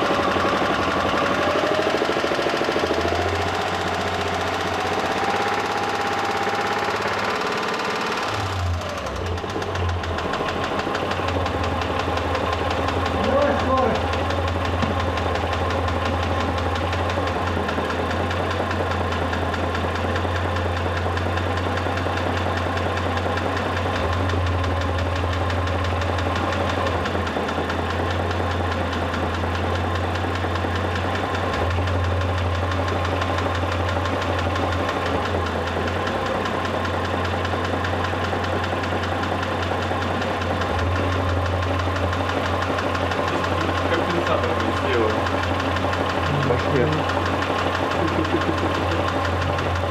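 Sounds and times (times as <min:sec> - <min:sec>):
car engine idling: 0:00.0 - 0:49.9
fast knock inside engine: 0:00.0 - 0:49.9.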